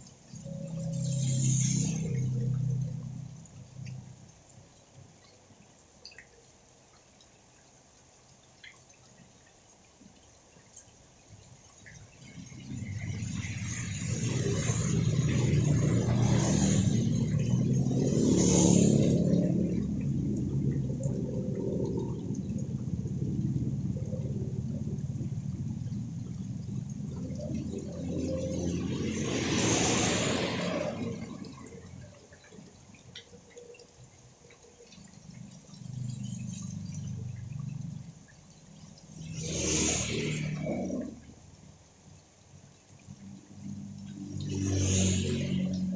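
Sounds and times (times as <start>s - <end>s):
low steady hum: 0.0s - 45.9s
rainwater dripping: 0.0s - 45.9s
vehicle engine rumble passing: 0.3s - 4.3s, 11.8s - 33.0s, 43.1s - 45.9s.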